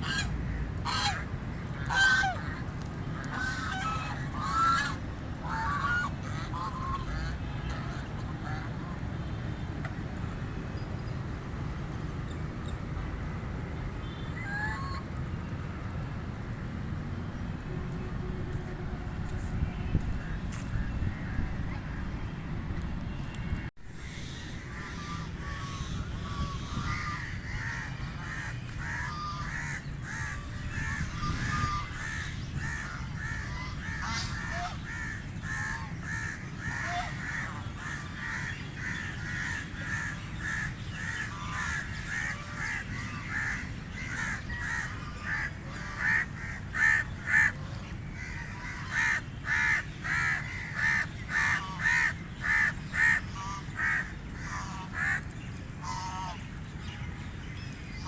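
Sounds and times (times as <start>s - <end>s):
ducks quacking: 0.0s - 1.2s, 1.8s - 2.6s, 24.0s - 56.4s.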